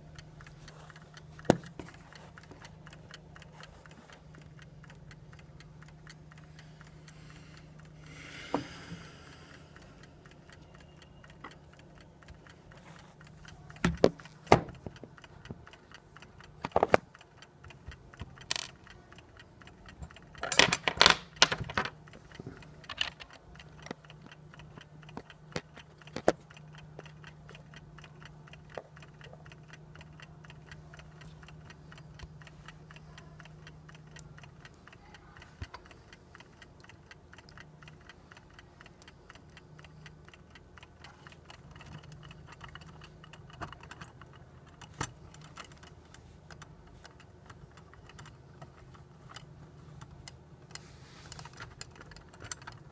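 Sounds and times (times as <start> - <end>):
clock ticking: 0.0 - 52.9
low steady hum: 0.0 - 52.9
small metal parts clinking: 20.4 - 22.0.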